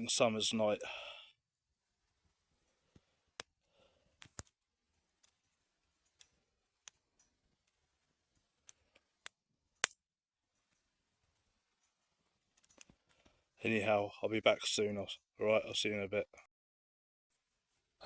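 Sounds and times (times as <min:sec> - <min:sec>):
campfire crackling and popping: 0:00.0 - 0:13.7.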